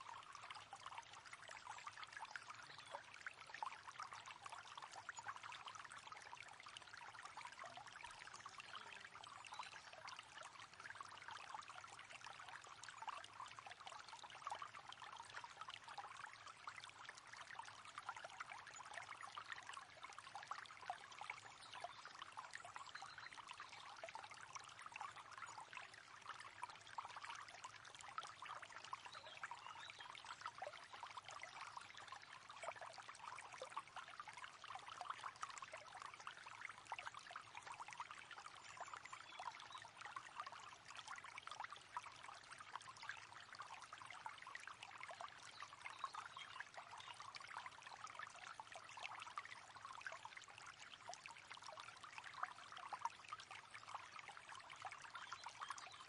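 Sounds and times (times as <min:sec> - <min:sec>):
river water babbling: 0:00.0 - 0:56.0.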